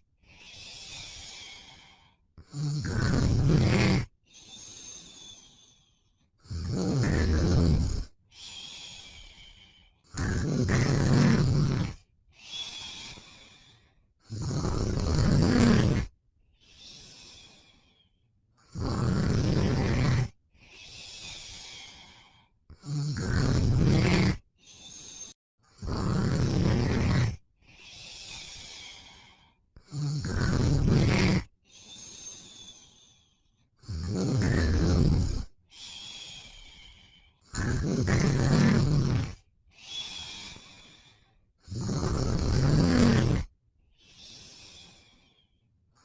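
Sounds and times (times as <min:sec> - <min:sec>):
hissing breath: 0:00.2 - 0:02.2, 0:04.3 - 0:06.3, 0:07.7 - 0:10.0, 0:11.0 - 0:14.0, 0:19.4 - 0:22.5, 0:26.9 - 0:29.6, 0:31.7 - 0:33.5, 0:38.0 - 0:41.4, 0:44.0 - 0:45.6
man snoring: 0:00.2 - 0:05.8, 0:06.4 - 0:18.0, 0:18.6 - 0:33.2, 0:33.8 - 0:45.3.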